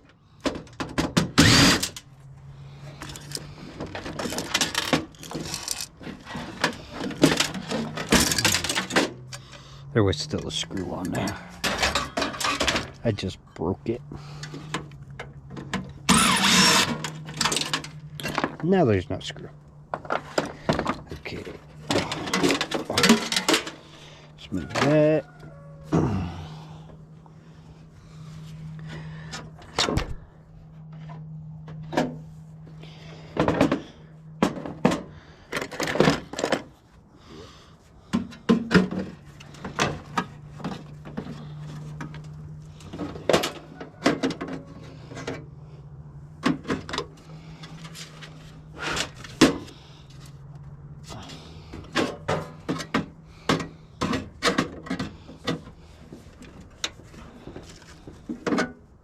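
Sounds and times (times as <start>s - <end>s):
metal parts clanking and knocking: 0.0s - 2.1s, 2.8s - 9.6s, 10.2s - 13.4s, 14.4s - 25.3s, 32.9s - 36.8s, 38.1s - 45.6s, 51.0s - 58.9s.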